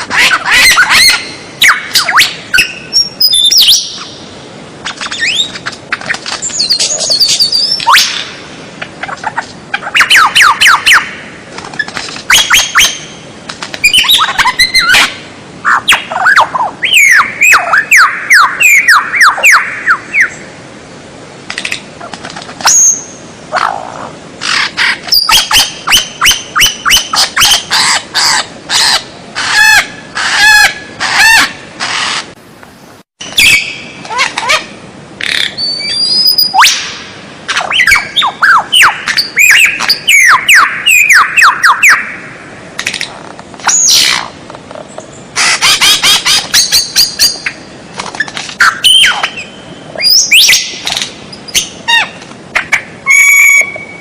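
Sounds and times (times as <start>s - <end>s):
songbird calls: 0.0s - 20.5s, 21.5s - 32.3s, 33.2s - 42.4s, 43.6s - 54.0s.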